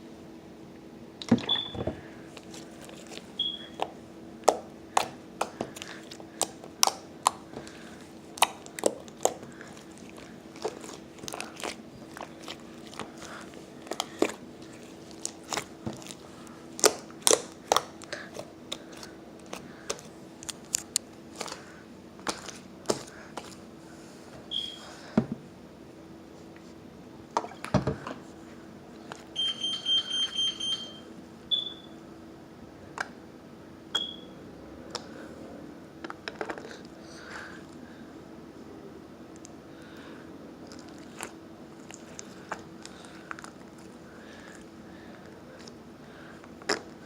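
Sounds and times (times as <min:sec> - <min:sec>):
slime clicking and popping: 0:06.4 - 0:07.4, 0:08.4 - 0:09.4, 0:16.8 - 0:18.1.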